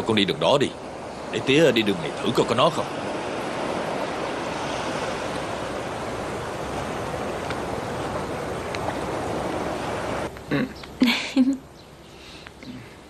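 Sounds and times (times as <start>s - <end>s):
steady rushing noise: 0.0s - 10.4s.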